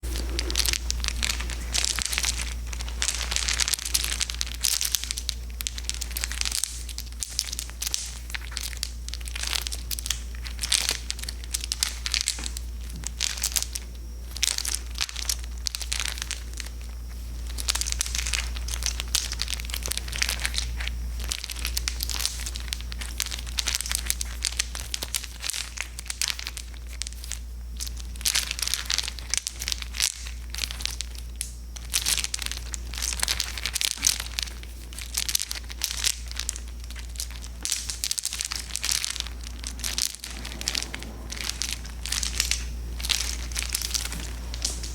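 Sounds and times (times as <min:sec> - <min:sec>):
steady low hum: 0:00.0 - 0:44.9
string lights clicking and rustling: 0:29.6 - 0:44.9.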